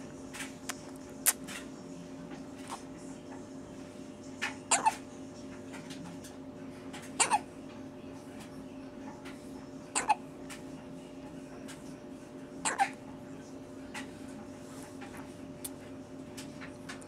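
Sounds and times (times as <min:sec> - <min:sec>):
baby hiccuping: 0:04.7 - 0:05.0, 0:07.2 - 0:07.5, 0:10.0 - 0:10.2, 0:12.6 - 0:13.0.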